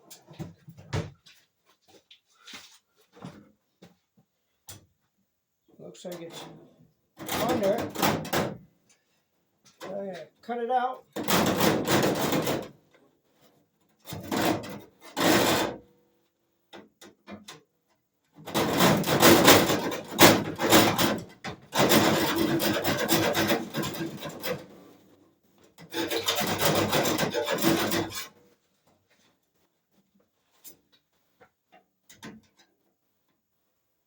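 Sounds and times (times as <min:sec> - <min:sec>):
hacksaw rasping strokes: 0:21.8 - 0:24.7, 0:25.9 - 0:28.3.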